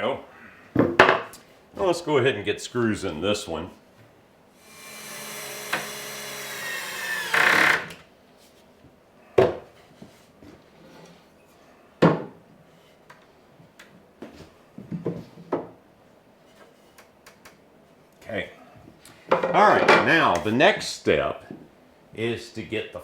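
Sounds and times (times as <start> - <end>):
power drill driving a screw: 4.6 - 8.0
wood and tools knocking: 19.3 - 20.1.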